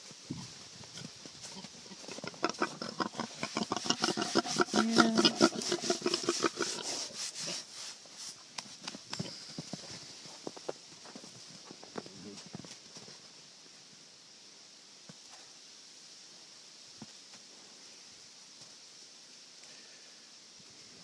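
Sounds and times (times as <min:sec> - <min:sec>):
piglets scuffling: 0:00.0 - 0:12.1
piglets grunting: 0:01.6 - 0:07.1.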